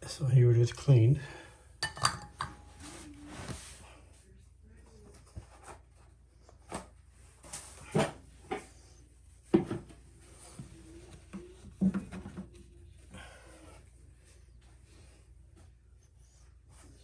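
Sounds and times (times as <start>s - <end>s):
knocks and clunks of filter: 11.4s - 12.6s.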